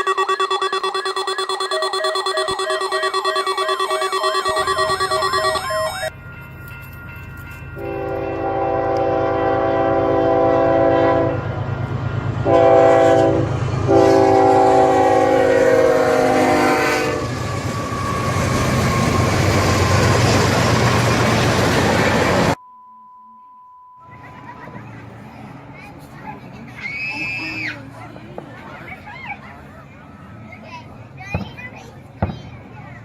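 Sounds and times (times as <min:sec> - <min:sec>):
short electronic tune: 0:00.0 - 0:06.1
train air horn blasts: 0:00.0 - 0:06.1, 0:07.8 - 0:11.6, 0:12.4 - 0:17.5
train rumbling past: 0:04.6 - 0:22.6.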